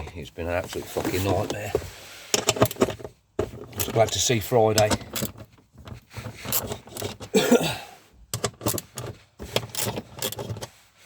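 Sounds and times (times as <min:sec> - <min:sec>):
tools and parts clicking: 0:02.3 - 0:07.3, 0:08.3 - 0:10.7.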